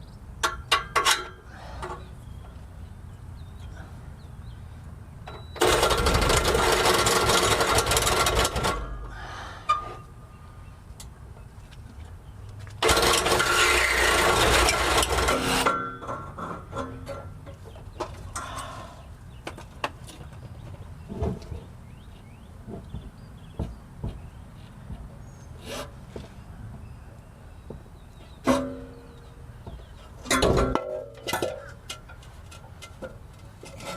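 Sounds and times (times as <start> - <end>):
power cutting tool cutting metal: 12.8 - 15.8.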